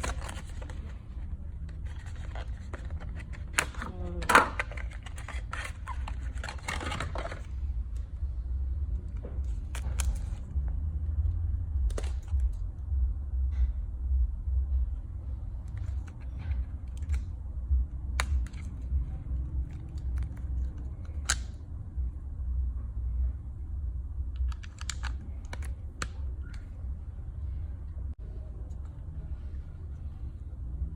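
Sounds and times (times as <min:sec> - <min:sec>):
packaging clicks scrapes and rustles: 0:00.0 - 0:07.5, 0:24.4 - 0:26.6
steady low hum: 0:00.0 - 0:30.9.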